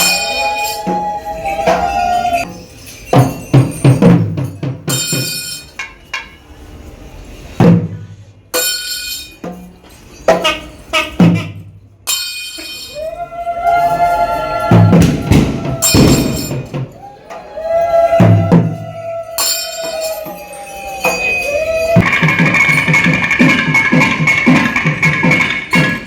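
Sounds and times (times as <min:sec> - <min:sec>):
wind instrument sliding notes: 0:00.0 - 0:02.5, 0:12.8 - 0:22.2
loud drum strokes: 0:13.4 - 0:26.0
cymbal crashes: 0:14.4 - 0:17.0.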